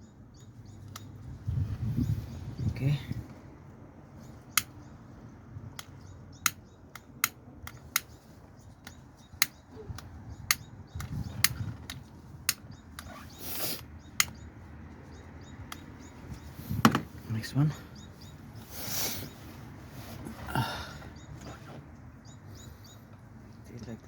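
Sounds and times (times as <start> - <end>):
sharp clicks: 4.4 - 4.9, 5.7 - 14.5.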